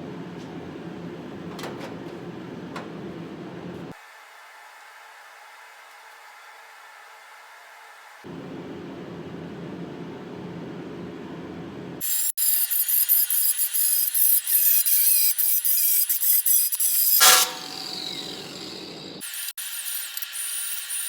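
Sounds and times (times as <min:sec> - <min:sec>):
power tool grinding: 0:16.8 - 0:21.0.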